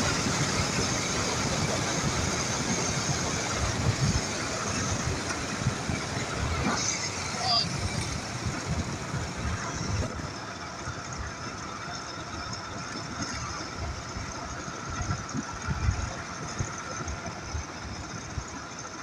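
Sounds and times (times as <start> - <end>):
wind buffeting microphone: 0.0 - 11.6
motorcycle engine running: 0.0 - 19.0.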